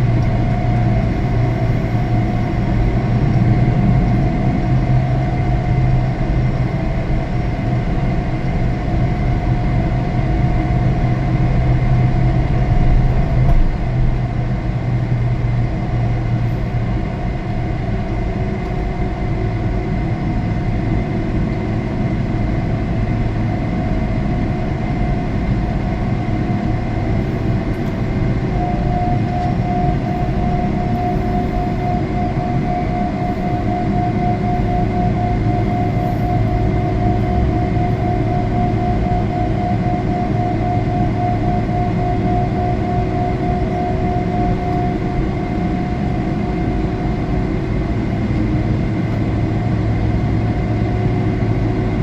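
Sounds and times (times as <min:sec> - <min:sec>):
jet engine cabin noise: 0:00.0 - 0:52.0.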